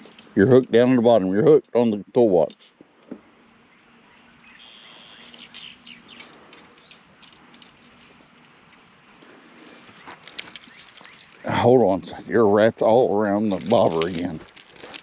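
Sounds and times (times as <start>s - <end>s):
wild birds chirping: 0.0s - 1.4s, 2.2s - 13.6s
whistled bird notes: 3.7s - 7.0s, 10.0s - 11.5s.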